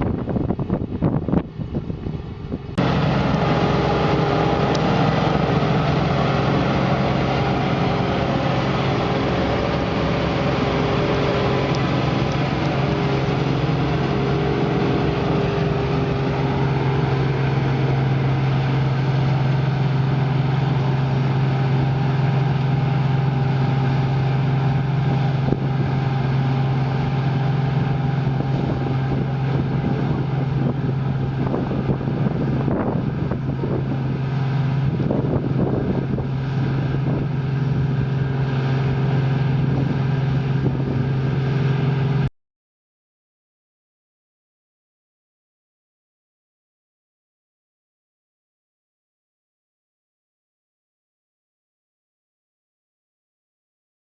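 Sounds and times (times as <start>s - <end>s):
diesel engine droning: 0.0s - 42.3s.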